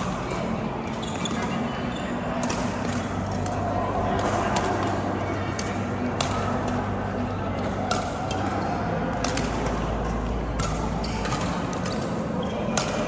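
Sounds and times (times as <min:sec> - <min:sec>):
steady background hum: 0:00.0 - 0:13.0
rackets hitting shuttlecock: 0:02.3 - 0:06.8, 0:07.6 - 0:13.0.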